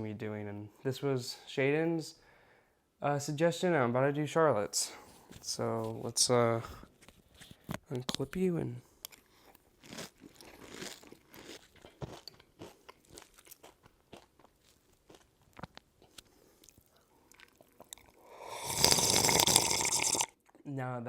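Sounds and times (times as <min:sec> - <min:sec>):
crunching and chewing crisp food: 0:09.0 - 0:20.6.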